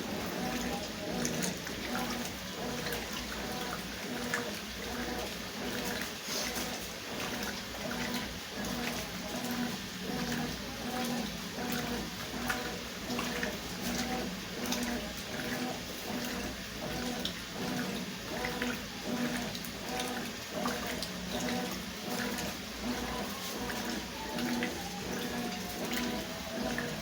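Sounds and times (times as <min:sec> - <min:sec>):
washing machine motor hum: 0:00.0 - 0:27.0
water sloshing: 0:00.0 - 0:27.0.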